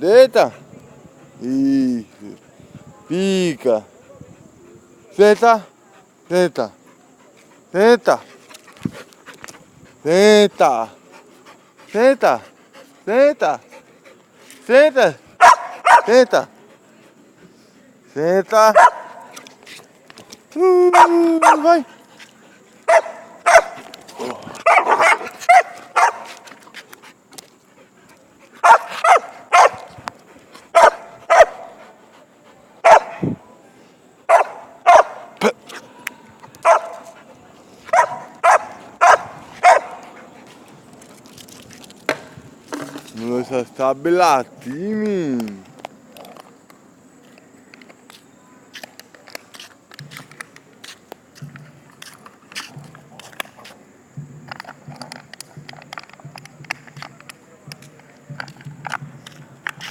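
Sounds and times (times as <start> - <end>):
dog barking: 15.4 - 16.2, 18.8 - 19.3, 22.9 - 23.8, 24.6 - 26.3, 28.6 - 29.8, 30.8 - 31.7, 32.8 - 33.2, 34.3 - 35.3, 36.6 - 37.1, 37.9 - 40.0.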